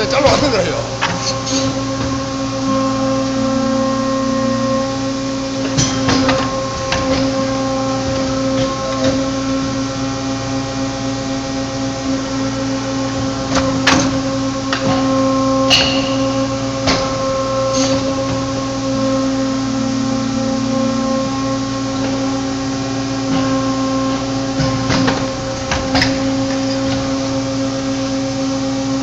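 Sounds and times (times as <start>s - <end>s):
machine clicks and clunks: 0.0s - 4.5s, 5.5s - 10.6s, 12.2s - 19.3s, 23.2s - 28.0s
machine motor hum: 0.0s - 29.0s.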